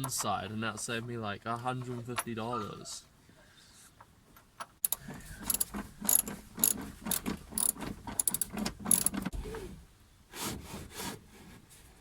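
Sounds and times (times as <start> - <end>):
seat belt retractor ratcheting: 4.8 - 9.5.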